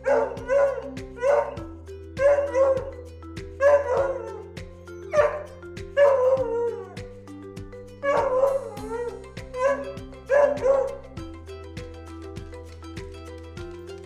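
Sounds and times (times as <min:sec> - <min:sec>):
dog barking and yelping: 0:00.0 - 0:01.6, 0:02.2 - 0:07.1, 0:08.0 - 0:11.1
cheerful background music: 0:00.0 - 0:14.0.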